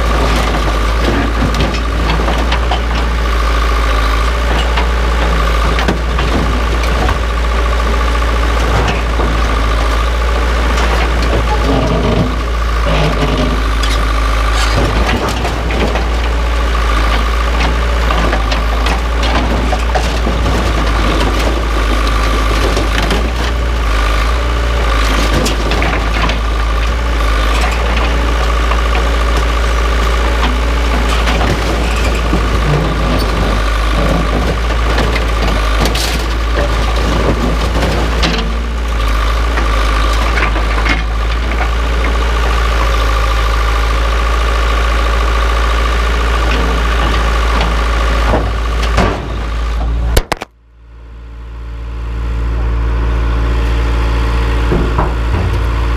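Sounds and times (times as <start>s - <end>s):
metal clanks and knocks: 0.0s - 24.2s, 24.9s - 42.3s, 46.5s - 49.6s, 54.5s - 55.9s
backhoe engine idling: 0.0s - 55.9s.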